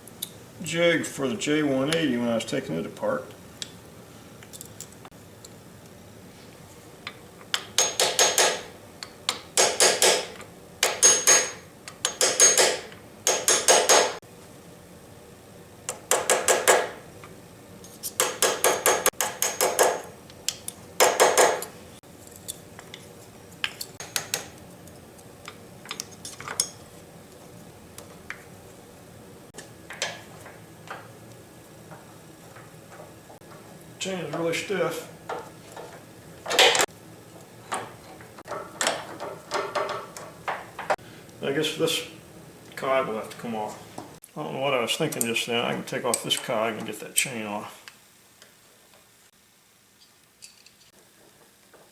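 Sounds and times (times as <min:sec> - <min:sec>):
hammer tapping on metal: 0:09.6 - 0:14.2.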